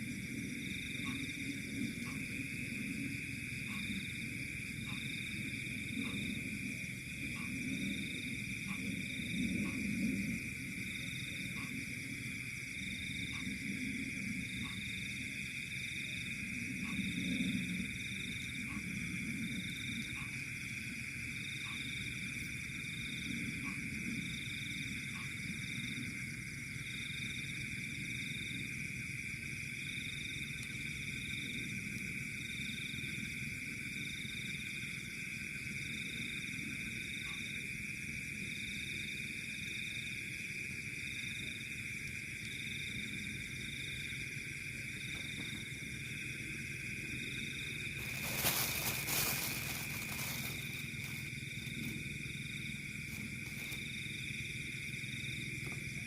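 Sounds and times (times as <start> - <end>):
low frog croaks: 0.0 - 10.4
high insect trill: 0.0 - 56.0.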